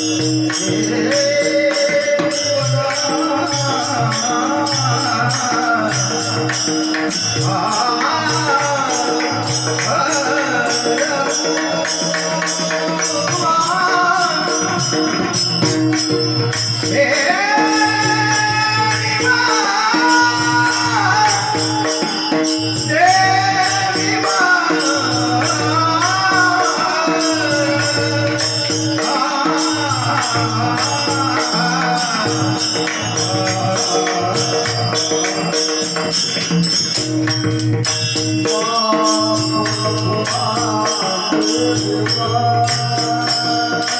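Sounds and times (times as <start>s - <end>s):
hand cymbals clashing: 0.0s - 43.9s
held accompanying notes: 0.0s - 43.9s
solo voice singing: 16.8s - 35.9s.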